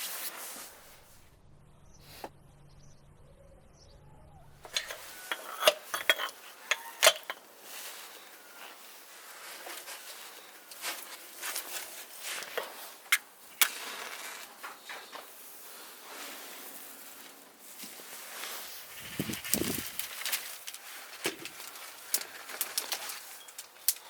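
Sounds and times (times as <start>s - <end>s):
kitchen utensils and dishes clinking: 4.7s - 15.2s.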